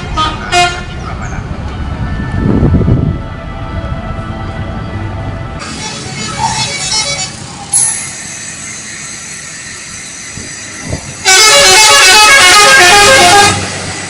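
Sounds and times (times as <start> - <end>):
bus musical horn: 0.0 - 1.0, 5.6 - 8.0, 11.2 - 13.9
street noise: 0.0 - 14.0.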